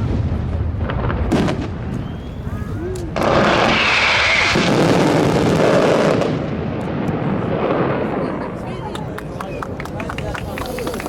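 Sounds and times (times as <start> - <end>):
fireworks bangs and crackling: 0.0 - 11.0.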